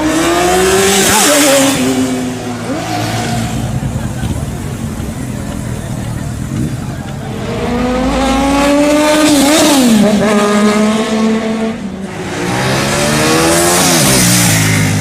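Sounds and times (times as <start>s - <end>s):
motorcycles accelerating past: 7.3s - 15.0s.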